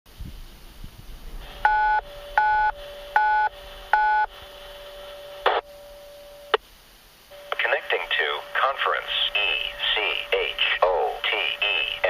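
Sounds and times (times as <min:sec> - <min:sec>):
steady hiss: 0:00.1 - 0:12.0
touch-tone beeps: 0:01.7 - 0:04.3
burst of radio static: 0:07.5 - 0:12.0.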